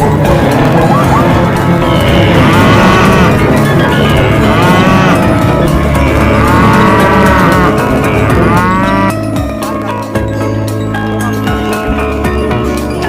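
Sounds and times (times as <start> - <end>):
drawn-out animal calls: 0.0 - 9.2.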